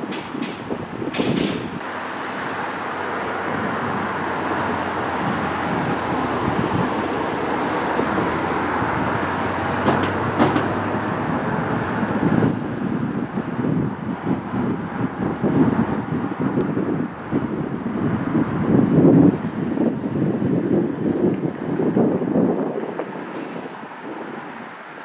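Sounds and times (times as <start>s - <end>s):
sharp clanks: 0.0s - 1.8s
passing vehicle rumbling: 0.0s - 25.0s.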